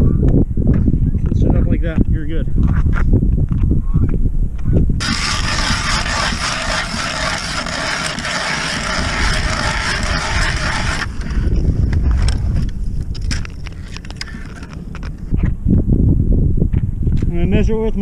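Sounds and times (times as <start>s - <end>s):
ice auger blades shaving ice: 5.0s - 11.6s.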